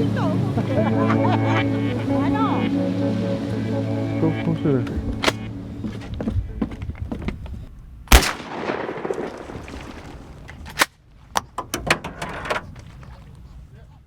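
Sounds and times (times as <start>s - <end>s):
sharp cracks: 8.1s - 11.8s.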